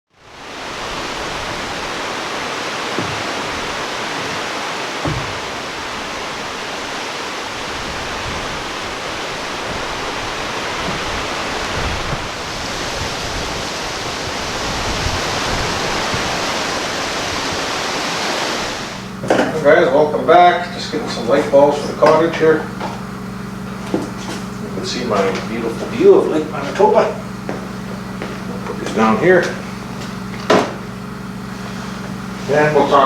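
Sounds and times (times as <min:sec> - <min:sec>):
steady rushing noise: 0:00.1 - 0:22.8
faint low bumps: 0:00.8 - 0:13.6.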